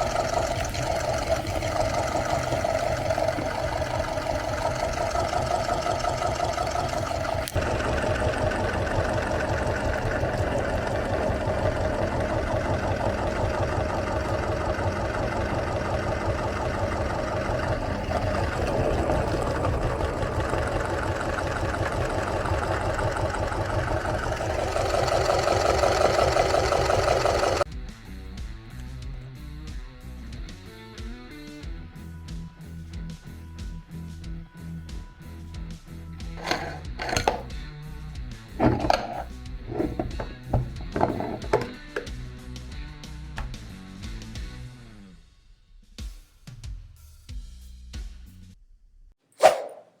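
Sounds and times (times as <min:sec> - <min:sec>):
electric meat grinder motor: 0:00.0 - 0:27.7, 0:36.4 - 0:37.4, 0:38.6 - 0:42.1.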